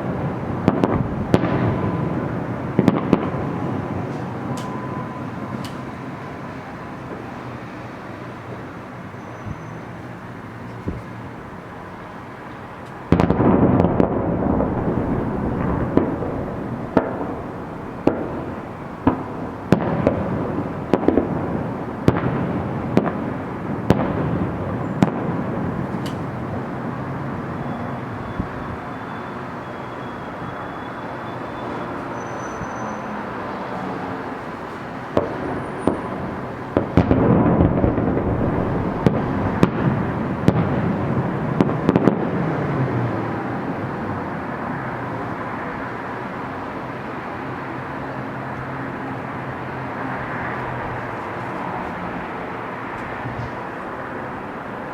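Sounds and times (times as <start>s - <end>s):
continuous rumbling wash: 0.0s - 54.9s.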